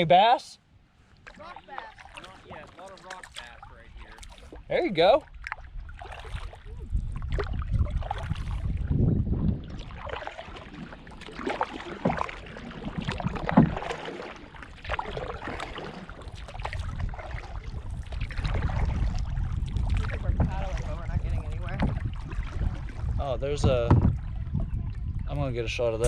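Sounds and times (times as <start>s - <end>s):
paddle strokes swishing water: 0.7s - 25.2s
wind rumble on microphone: 3.4s - 26.0s
paddle knocking against hull: 5.3s - 25.0s.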